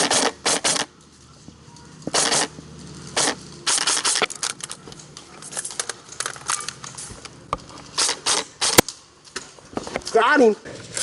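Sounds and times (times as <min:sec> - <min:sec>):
airsoft guns firing: 0:00.0 - 0:00.9, 0:02.1 - 0:02.5, 0:03.2 - 0:04.3, 0:08.0 - 0:08.9.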